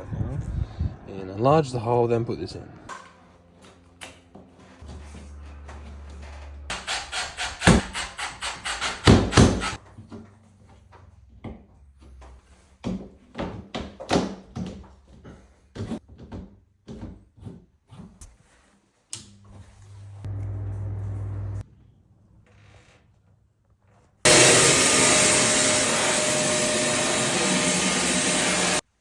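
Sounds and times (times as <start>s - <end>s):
saw cutting: 6.7s - 9.8s, 24.3s - 28.8s
low steady hum: 19.5s - 21.6s.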